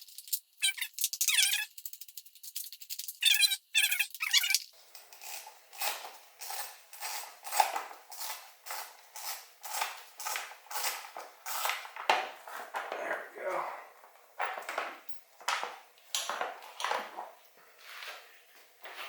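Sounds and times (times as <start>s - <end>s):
ratchet wrench squeak: 0.2s - 1.9s, 2.6s - 4.7s.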